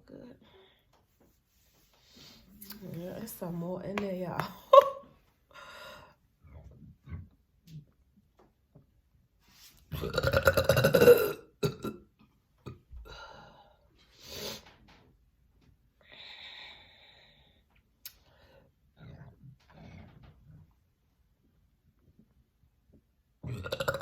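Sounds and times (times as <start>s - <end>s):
loud burp: 9.9s - 12.8s, 23.4s - 24.0s.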